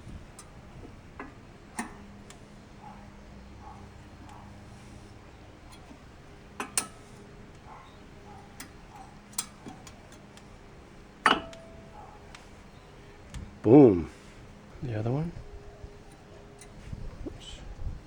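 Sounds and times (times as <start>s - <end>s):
metallic clicks of brake pad: 0.0s - 10.5s, 11.2s - 13.6s.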